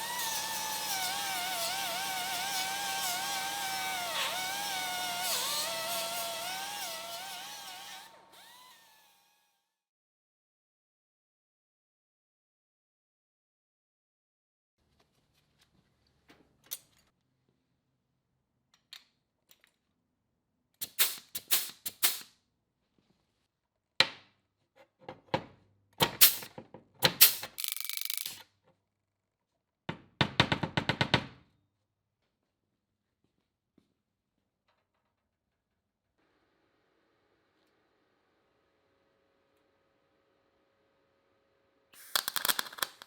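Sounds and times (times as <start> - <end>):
power tool burst: 0.0 - 9.4, 42.0 - 43.0.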